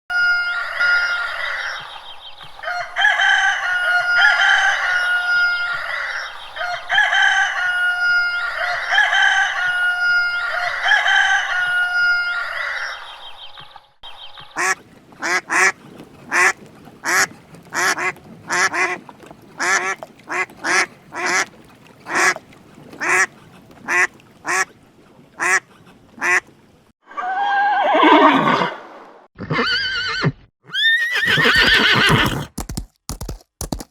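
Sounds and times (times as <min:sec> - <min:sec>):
farm fowl calling: 0:00.1 - 0:02.0, 0:02.6 - 0:13.4, 0:14.6 - 0:19.0, 0:25.4 - 0:25.6
horse whinnying: 0:27.1 - 0:28.8, 0:29.4 - 0:32.6.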